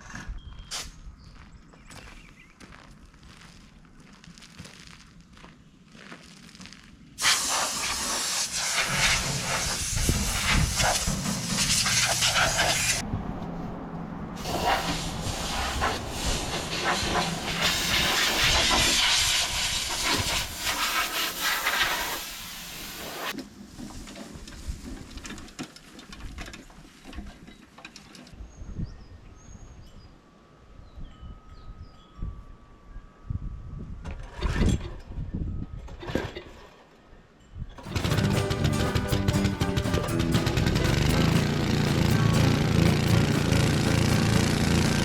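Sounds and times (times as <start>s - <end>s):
pressure washer jet hissing: 7.2s - 13.0s, 14.4s - 23.3s, 37.8s - 45.0s.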